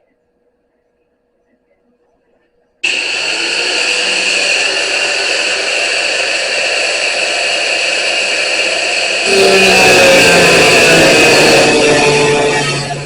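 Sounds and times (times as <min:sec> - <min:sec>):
angle grinder cutting steel: 0:02.8 - 0:13.0.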